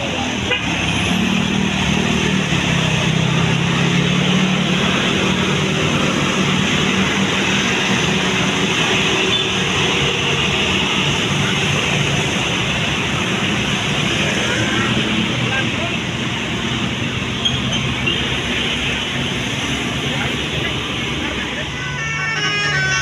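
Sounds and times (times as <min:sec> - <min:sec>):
heavy road traffic: 0:00.0 - 0:23.0.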